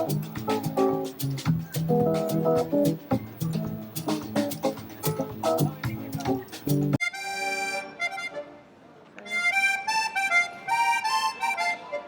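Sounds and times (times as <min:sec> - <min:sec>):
lively music with drum strikes: 0:00.0 - 0:07.0.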